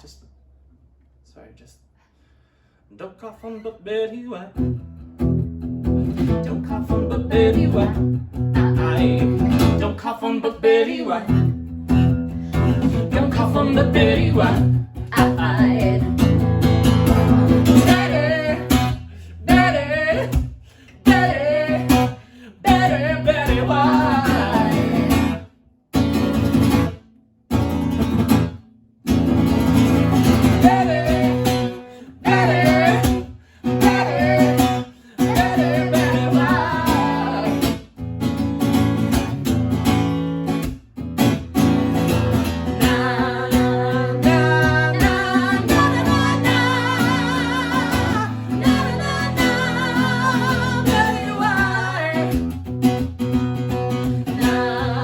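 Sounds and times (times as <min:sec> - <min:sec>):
strummed acoustic guitar: 0:04.6 - 0:55.0
person singing: 0:21.0 - 0:25.3, 0:30.4 - 0:37.8, 0:42.5 - 0:52.3, 0:54.3 - 0:55.0.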